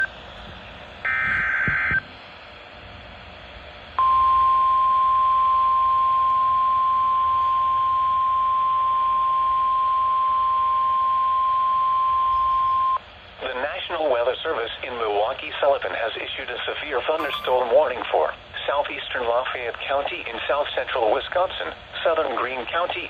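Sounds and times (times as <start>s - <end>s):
radio hiss: 13.3s - 23.0s
digital data screech: 17.2s - 17.7s
steady alarm tone: 17.2s - 17.9s.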